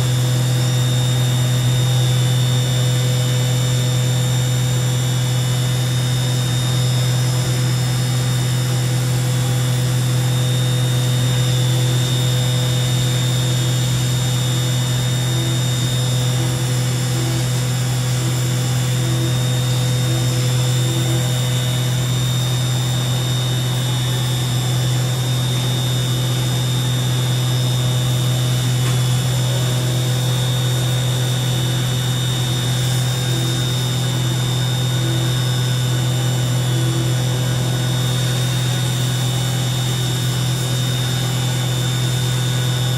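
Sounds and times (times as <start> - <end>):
machining center hum and whine: 0.0 - 42.9.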